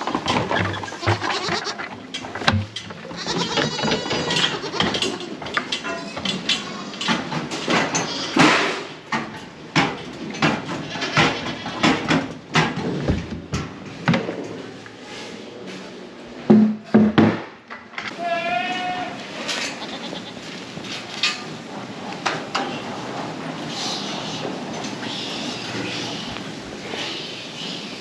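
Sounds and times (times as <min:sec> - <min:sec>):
goats bleating: 0:00.0 - 0:02.1, 0:02.9 - 0:05.7, 0:18.1 - 0:20.6
knocks and clatter: 0:00.0 - 0:14.5.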